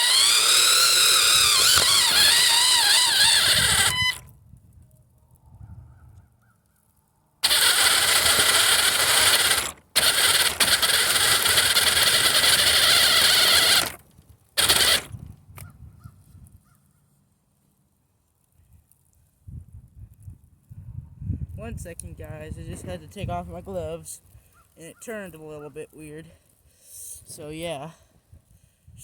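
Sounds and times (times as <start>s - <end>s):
rc car motor whining: 0.0s - 4.3s, 7.4s - 15.3s.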